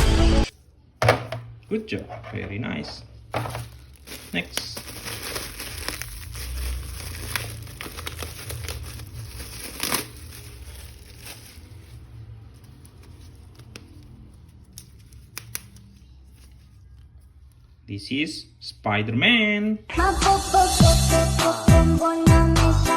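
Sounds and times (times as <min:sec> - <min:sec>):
plastic packaging crinkling and tearing: 0:02.7 - 0:17.3.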